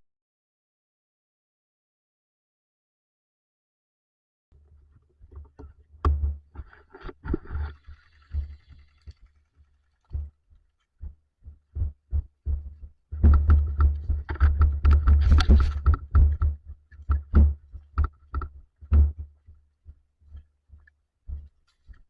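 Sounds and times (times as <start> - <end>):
rustling and knocking: 5.2 - 9.4, 11.0 - 19.6
deep thumps on microphone: 6.0 - 7.7, 11.0 - 19.5.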